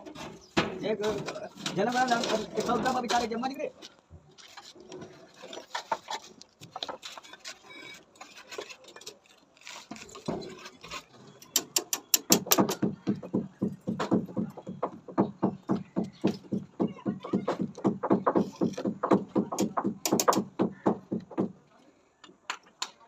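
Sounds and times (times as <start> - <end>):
tool taps and scrapes: 0.0 - 12.8
rapid sharp knocks: 12.2 - 21.5.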